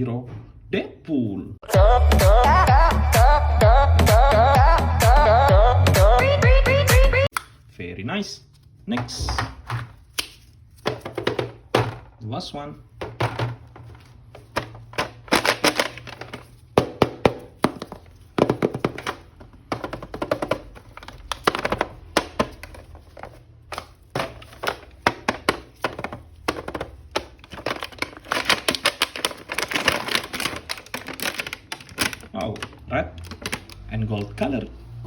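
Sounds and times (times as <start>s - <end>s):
packaging crinkling: 13.8s - 16.8s, 20.4s - 33.9s.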